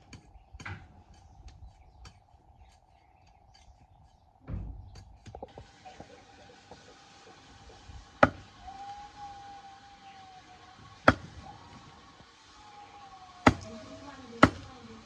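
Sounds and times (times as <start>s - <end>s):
blade chopping bamboo: 8.2s - 8.5s, 11.0s - 11.4s, 13.4s - 15.0s.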